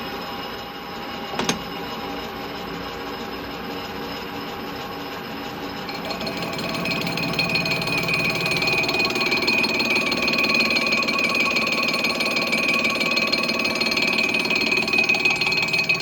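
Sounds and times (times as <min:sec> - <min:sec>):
metal lathe running: 0:05.9 - 0:16.0.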